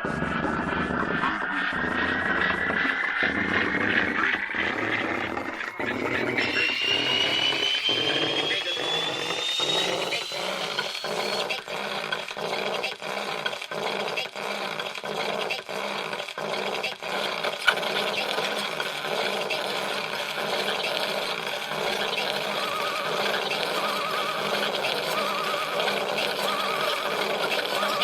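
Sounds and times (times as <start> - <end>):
high whistling tone: 0.0 - 11.8, 21.8 - 28.0
grinding noise music: 0.0 - 15.1, 17.6 - 28.0.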